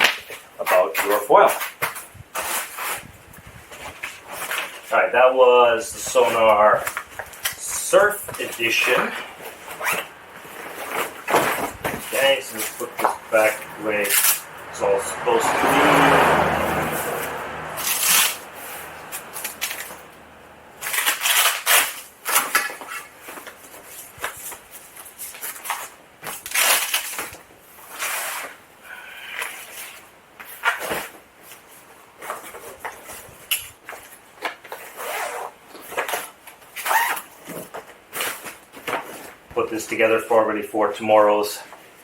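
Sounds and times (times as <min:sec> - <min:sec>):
packaging rustling and crinkling: 0:06.7 - 0:13.6, 0:20.8 - 0:28.6, 0:29.5 - 0:39.5.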